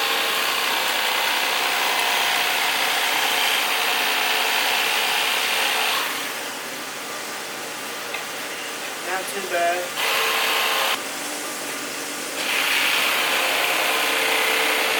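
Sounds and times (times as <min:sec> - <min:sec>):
electric knife running: 0:00.0 - 0:06.6, 0:09.2 - 0:11.4, 0:12.2 - 0:14.9.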